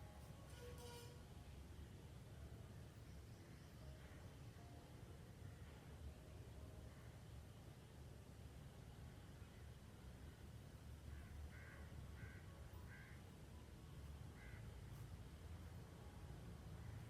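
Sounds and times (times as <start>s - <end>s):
faint crow cawing: 11.0s - 13.3s, 14.3s - 15.1s.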